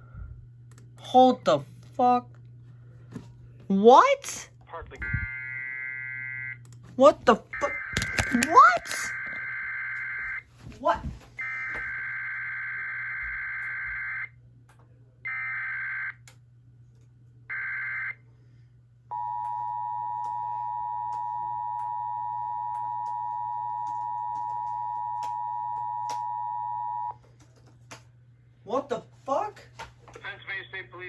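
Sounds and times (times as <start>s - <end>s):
two-tone alert signal: 7.6s - 9.5s.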